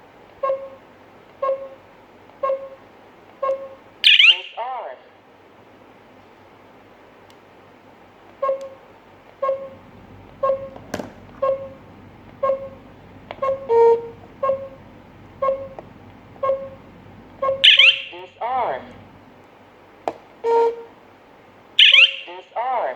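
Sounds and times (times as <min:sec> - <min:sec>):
alarm panel short beeps: 0:09.5 - 0:18.1
long lower alarm beep: 0:09.5 - 0:18.1, 0:21.8 - 0:22.2.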